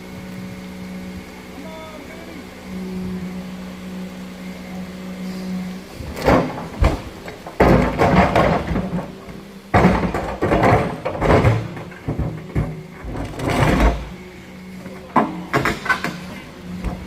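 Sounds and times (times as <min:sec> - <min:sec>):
boulders knocking and scraping: 0:05.9 - 0:17.0.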